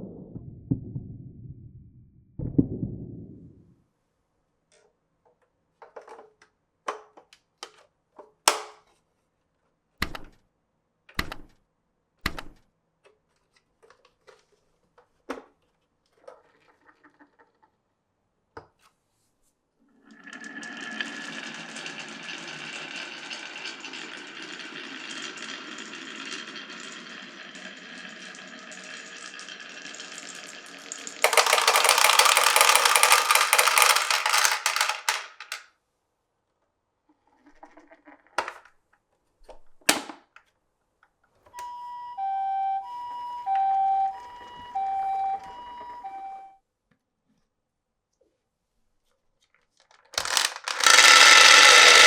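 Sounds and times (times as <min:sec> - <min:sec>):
heavier knocks: 0:02.4 - 0:03.4
marbles rolling rumble: 0:20.1 - 0:35.6, 0:50.2 - 0:52.0
marbles clicking on wooden track: 0:20.3 - 0:35.6, 0:50.2 - 0:52.0.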